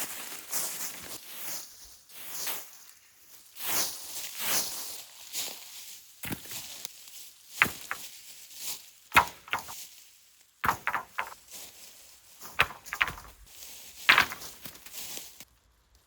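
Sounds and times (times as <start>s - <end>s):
wooden knocks and clunks: 7.6s - 8.0s, 9.2s - 9.8s, 10.6s - 11.4s, 12.5s - 13.4s, 14.1s - 14.8s.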